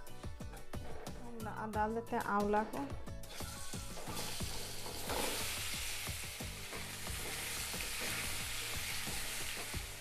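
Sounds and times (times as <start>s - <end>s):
frying in hot oil sizzle: 3.3s - 10.0s.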